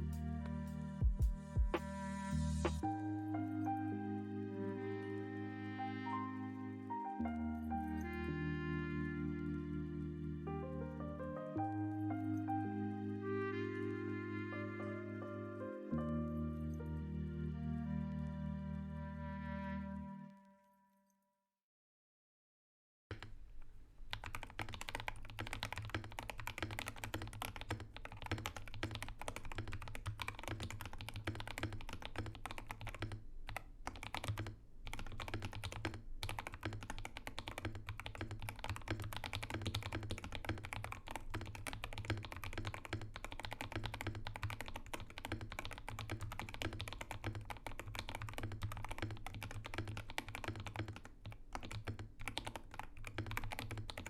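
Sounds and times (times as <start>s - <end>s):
fast mechanical keyboard typing: 23.1s - 54.0s.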